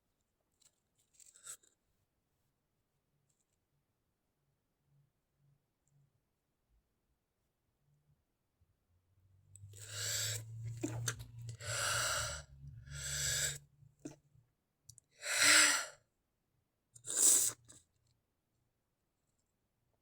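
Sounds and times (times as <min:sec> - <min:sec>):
breathy hitching breaths: 0:09.8 - 0:13.6, 0:15.2 - 0:16.0.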